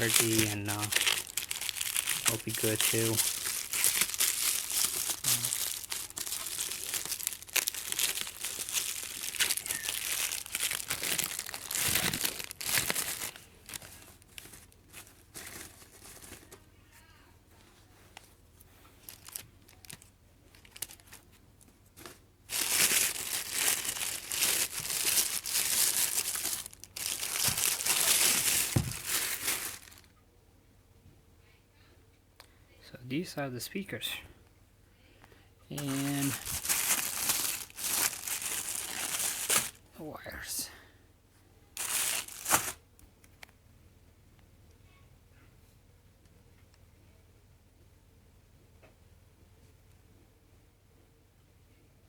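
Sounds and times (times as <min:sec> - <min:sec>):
plastic packaging crinkling: 0:00.0 - 0:16.7, 0:19.0 - 0:30.1, 0:35.7 - 0:39.8, 0:41.8 - 0:42.8.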